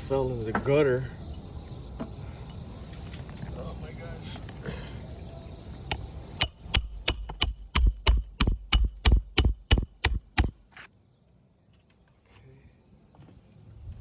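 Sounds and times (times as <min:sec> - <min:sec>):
sharp evenly spaced knocks: 0:05.9 - 0:10.9.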